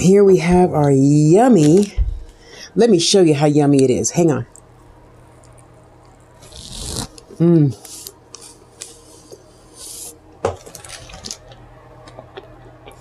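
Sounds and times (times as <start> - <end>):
fast-food packaging crinkling: 10.5 - 12.5.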